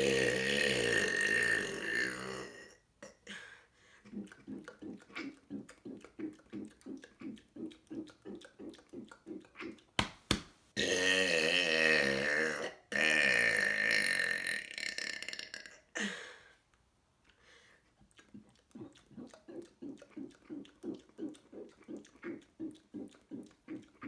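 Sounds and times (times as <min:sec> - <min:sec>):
man burping loudly: 0:00.0 - 0:03.2, 0:10.8 - 0:16.1.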